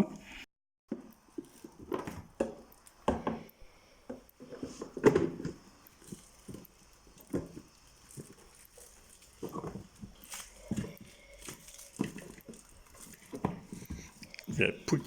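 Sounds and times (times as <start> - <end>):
plastic parts knocking and clacking: 4.1 - 6.6, 9.4 - 14.2.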